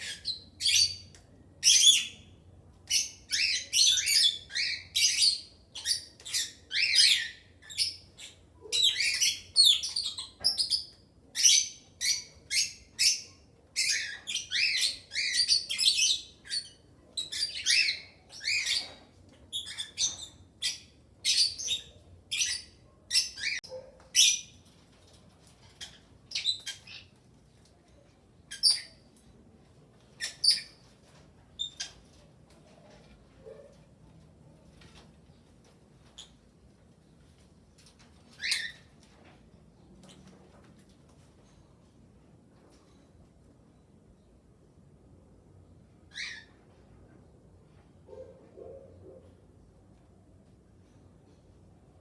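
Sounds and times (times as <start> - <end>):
birds chirping and shrieking: 0.0 - 29.3, 30.1 - 33.8, 37.8 - 39.2, 46.0 - 46.8.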